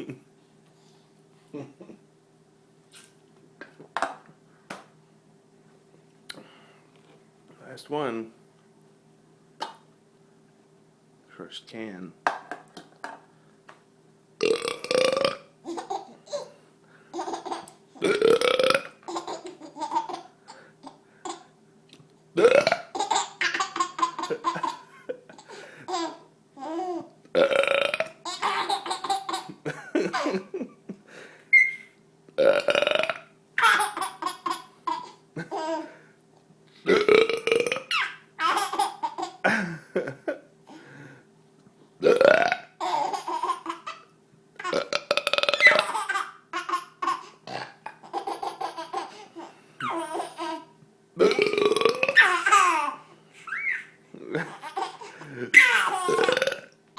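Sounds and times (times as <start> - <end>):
man burping loudly: 14.4 - 15.5, 18.0 - 19.0, 22.4 - 23.0, 27.4 - 28.2, 32.4 - 33.3, 36.9 - 37.9, 42.0 - 42.7, 44.7 - 45.8, 47.5 - 48.0, 51.2 - 52.2, 54.2 - 56.8
baby laughing: 15.6 - 16.6, 17.2 - 17.8, 19.0 - 21.5, 22.8 - 27.1, 28.2 - 30.6, 33.6 - 35.9, 37.8 - 39.6, 42.8 - 44.7, 45.6 - 50.7, 52.1 - 56.3.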